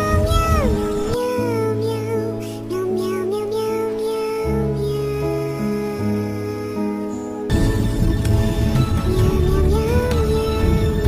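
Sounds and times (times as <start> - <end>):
soft sustained music notes: 0.0 - 11.0
tense dense music: 7.4 - 11.0.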